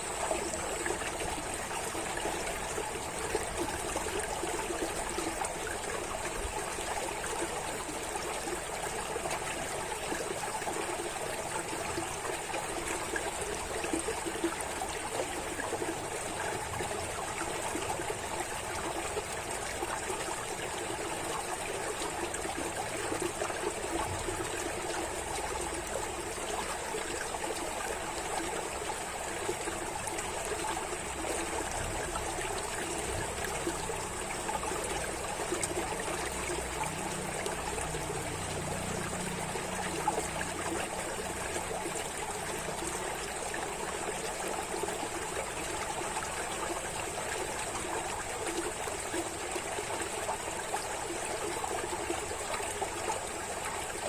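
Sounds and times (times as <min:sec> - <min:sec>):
running water trickling: 0:00.0 - 0:54.0.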